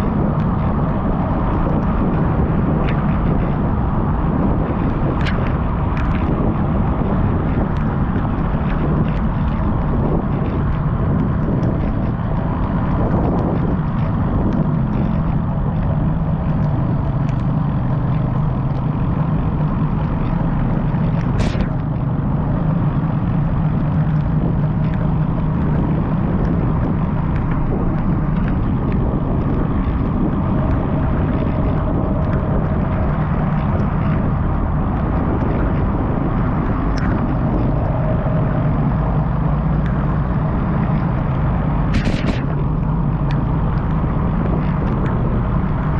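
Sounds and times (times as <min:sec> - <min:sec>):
small bike clicks: 0:00.0 - 0:45.9
wind and road noise rumble: 0:00.0 - 0:45.9
sharp click: 0:21.2 - 0:22.0, 0:41.9 - 0:44.0.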